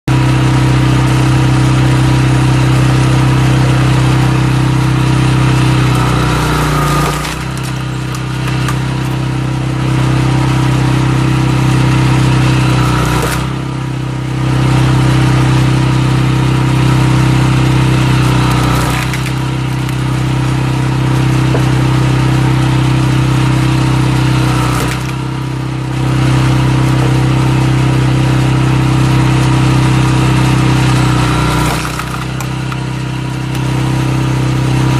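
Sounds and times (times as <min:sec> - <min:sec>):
small engine running: 0:00.1 - 0:34.9
log cracking: 0:06.4 - 0:09.2, 0:18.6 - 0:20.2.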